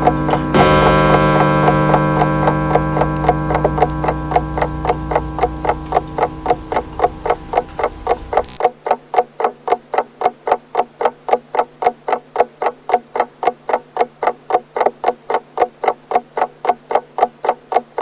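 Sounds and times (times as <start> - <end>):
pendulum clock ticking: 0.0 - 18.0.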